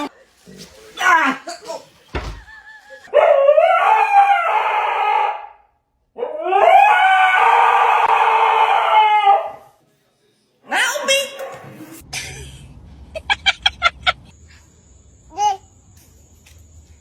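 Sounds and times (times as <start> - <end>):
dog howling: 3.1 - 5.5, 6.2 - 9.7.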